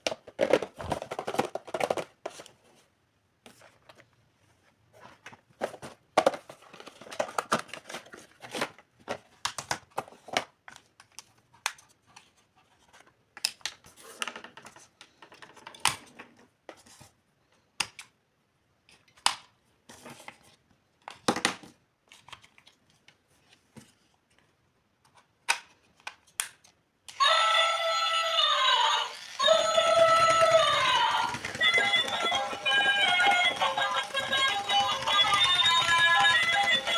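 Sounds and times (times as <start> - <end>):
toy pieces clicking: 29.0 - 36.9.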